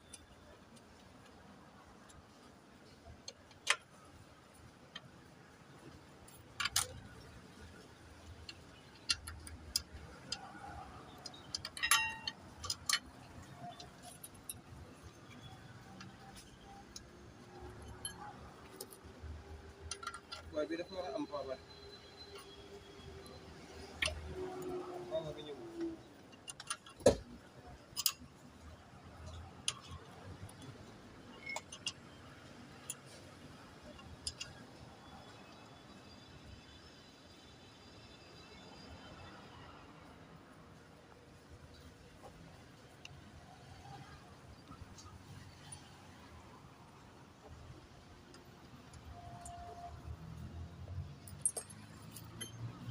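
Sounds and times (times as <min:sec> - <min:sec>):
metal tools clicking and clinking: 0:06.3 - 0:07.8, 0:08.4 - 0:19.1, 0:19.7 - 0:20.9, 0:26.1 - 0:33.2, 0:33.8 - 0:34.8, 0:51.2 - 0:52.9.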